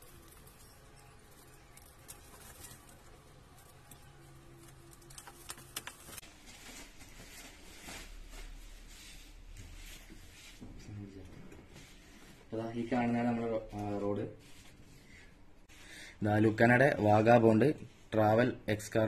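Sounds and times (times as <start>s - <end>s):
packaging rustling: 0.0s - 8.6s
wrapping crinkling: 0.0s - 9.0s.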